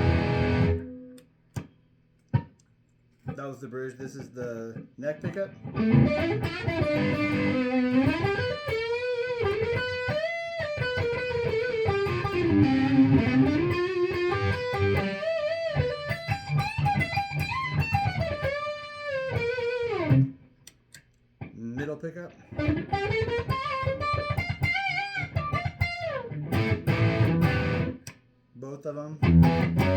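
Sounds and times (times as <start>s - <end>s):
distorted electric guitar lead: 0.0s - 1.2s, 5.2s - 20.3s, 22.4s - 28.1s, 29.2s - 29.9s.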